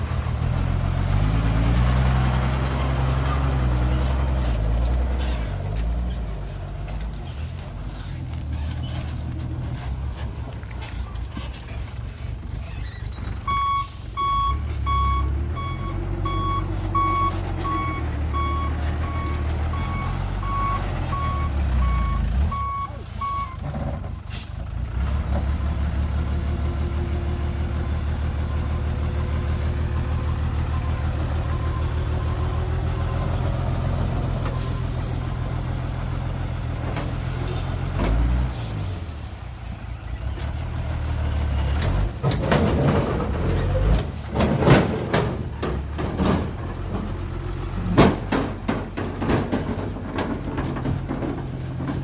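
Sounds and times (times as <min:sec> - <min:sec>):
diesel engine running: 0:00.0 - 0:52.0
reversing alarm beeping: 0:13.5 - 0:23.6.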